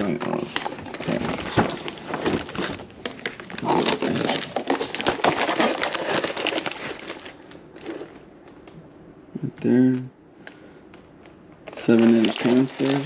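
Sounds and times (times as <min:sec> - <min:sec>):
packaging rustling and scraping: 0:00.0 - 0:08.3, 0:11.6 - 0:13.0.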